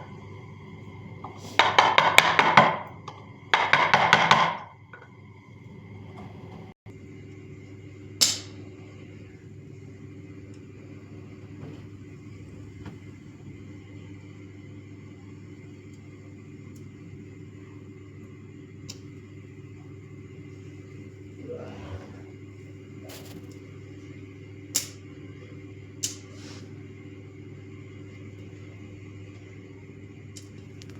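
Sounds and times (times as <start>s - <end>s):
steady low hum: 0.0s - 30.9s
carving tool knocking wood: 1.6s - 2.8s, 3.6s - 4.6s.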